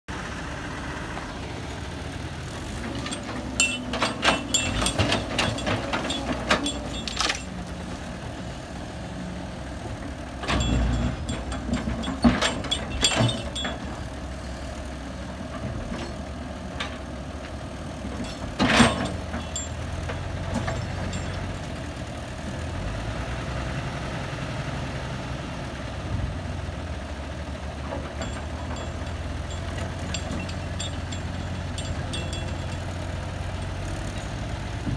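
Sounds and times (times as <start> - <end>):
heavy machine engine rumbling: 0.1 - 34.9
knocks and clanks: 2.8 - 7.6, 10.4 - 14.0, 18.1 - 21.5, 27.9 - 34.9.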